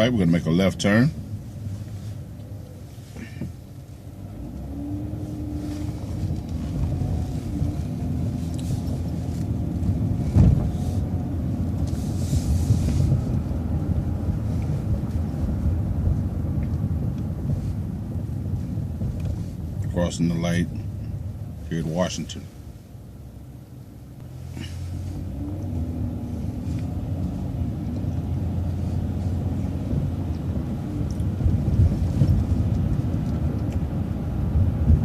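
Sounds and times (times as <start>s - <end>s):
bus drivetrain rumble: 0.0s - 35.0s.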